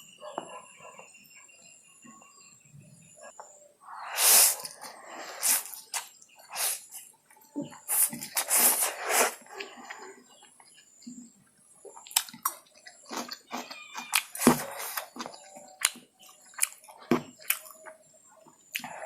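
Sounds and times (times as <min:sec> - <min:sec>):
chewing noodles: 0:11.8 - 0:19.0.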